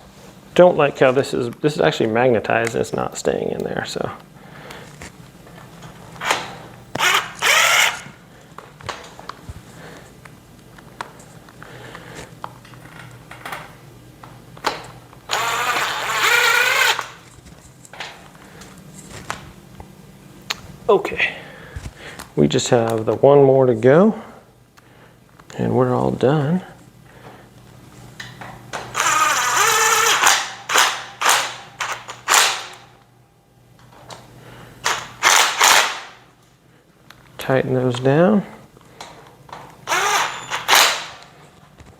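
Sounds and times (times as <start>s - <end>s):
low electrical hum: 0.0s - 41.9s
electric drill motor whining: 6.9s - 8.2s, 15.3s - 17.2s, 28.9s - 30.4s, 39.9s - 41.0s
screw scraping turns: 7.0s - 8.1s, 15.3s - 17.2s, 28.9s - 32.4s, 39.9s - 41.0s
screwdriver squeaky grinding in metal: 7.0s - 8.1s, 15.3s - 17.1s, 29.0s - 30.3s, 39.9s - 40.8s
screws and metal parts clicking: 7.0s - 8.1s, 39.9s - 41.0s.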